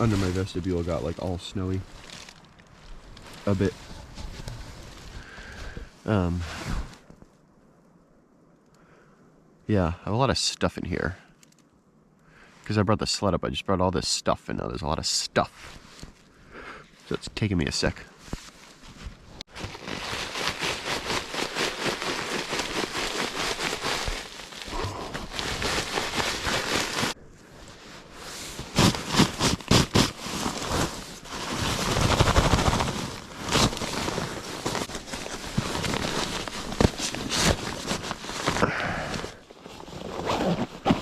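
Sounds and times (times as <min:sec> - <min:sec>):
gear rustling and crackling: 0:00.0 - 0:05.7, 0:18.2 - 0:41.0.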